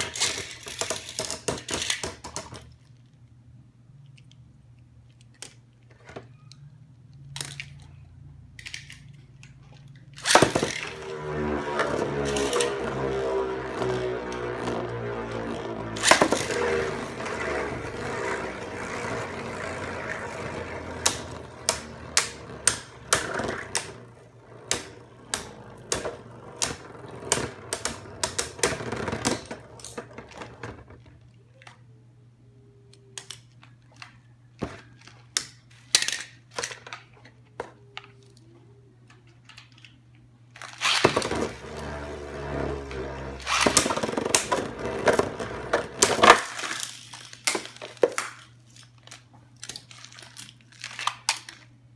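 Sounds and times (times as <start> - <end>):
steady low hum: 10.6 - 29.7.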